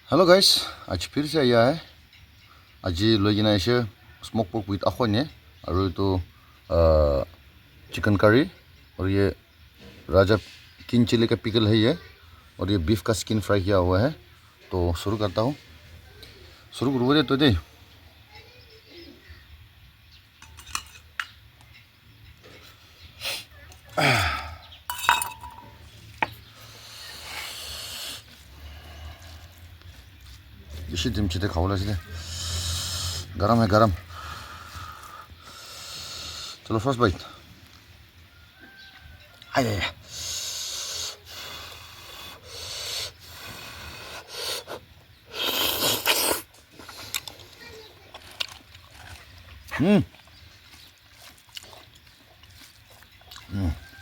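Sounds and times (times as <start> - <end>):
spoon and plate clinks: 20.4 - 21.3, 24.9 - 25.8
breathing through the nose: 26.6 - 29.7, 34.1 - 36.7, 40.0 - 47.2
person chewing food: 45.4 - 54.0.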